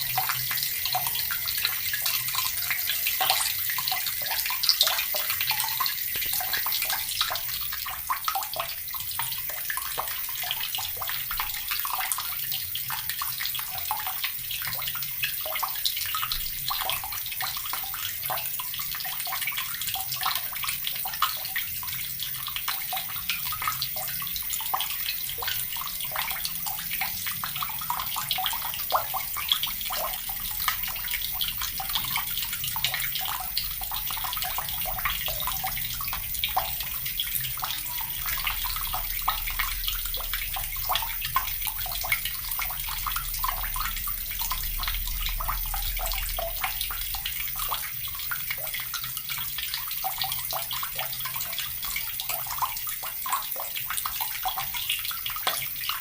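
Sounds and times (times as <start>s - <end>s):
water running from a tap: 0.0s - 56.0s.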